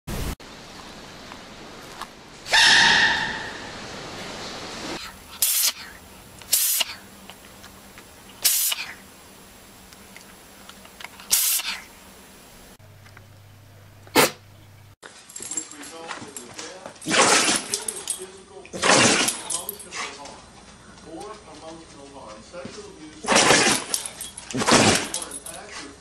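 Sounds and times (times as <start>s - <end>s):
hissing burst: 2.5s - 7.4s, 8.0s - 12.8s
small animal sneezing: 5.0s - 7.1s, 8.4s - 9.0s, 11.3s - 11.9s.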